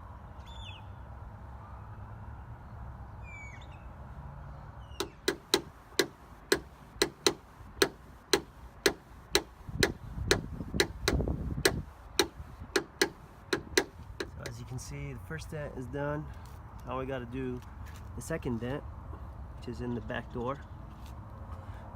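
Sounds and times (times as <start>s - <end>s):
light taps on car door panel: 5.0s - 14.6s.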